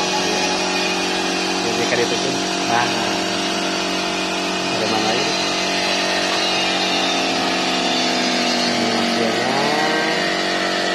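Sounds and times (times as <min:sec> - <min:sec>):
engraving machine spindle whine: 0:00.0 - 0:10.9.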